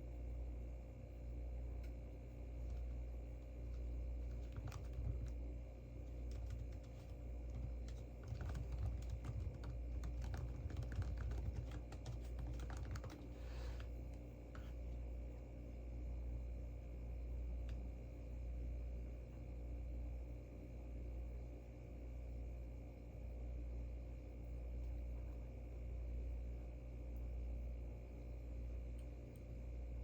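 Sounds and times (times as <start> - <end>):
steady low hum: 0.0 - 30.0
computer keyboard typing: 2.6 - 13.9.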